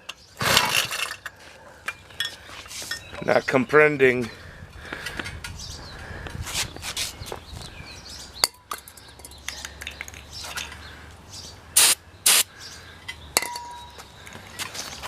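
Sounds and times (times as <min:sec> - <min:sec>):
hissing spray bursts: 0:11.8 - 0:12.5.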